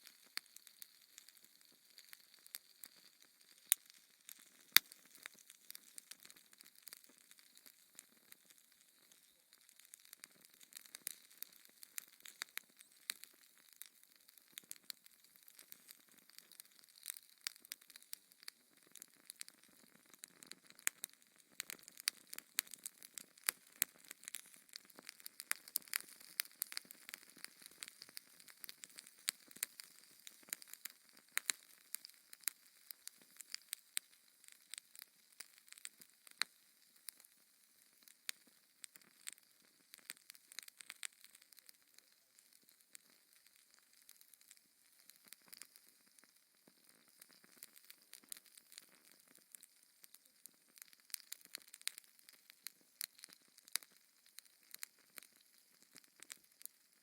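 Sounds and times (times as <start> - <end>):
fire crackling in fireplace: 0.0 - 57.0.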